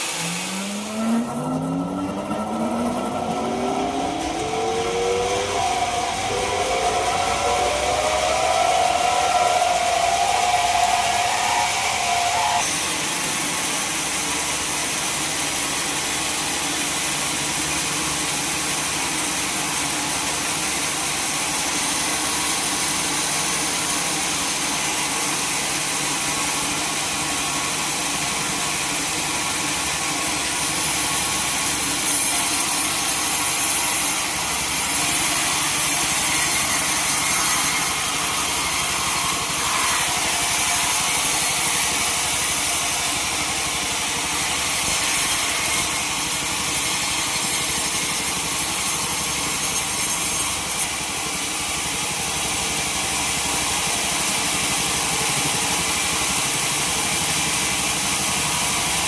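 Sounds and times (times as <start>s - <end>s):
engine drone: 0.0s - 12.8s, 29.4s - 47.4s
saw blade hissing through wood: 0.0s - 12.8s.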